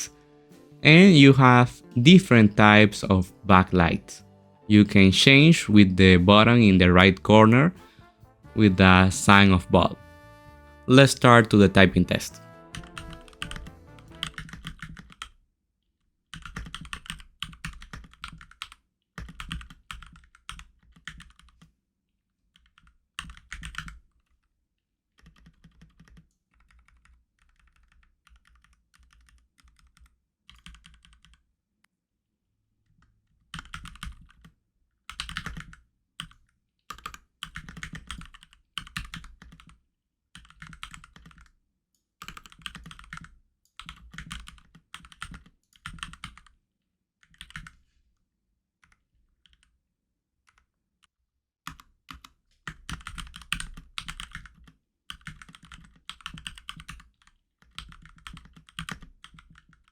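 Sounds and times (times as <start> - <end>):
mechanical keyboard typing: 11.0 - 15.4, 16.3 - 21.7, 22.6 - 24.4, 25.2 - 31.4, 33.5 - 34.5, 35.1 - 39.8, 40.4 - 41.5, 42.2 - 46.5, 47.2 - 47.8, 51.7 - 59.9.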